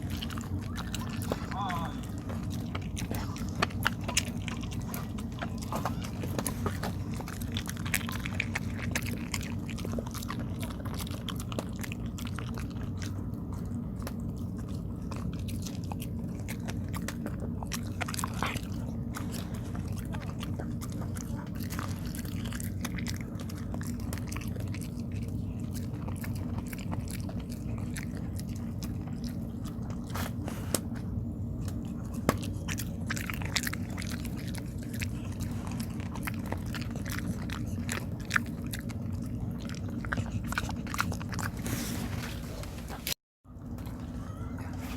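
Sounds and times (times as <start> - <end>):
dog chewing: 0.0 - 44.9
low steady hum: 0.0 - 44.9.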